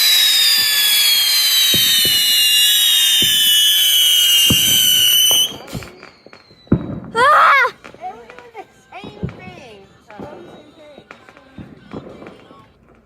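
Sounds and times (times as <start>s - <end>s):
whistling firework shrieking: 0.0s - 7.8s.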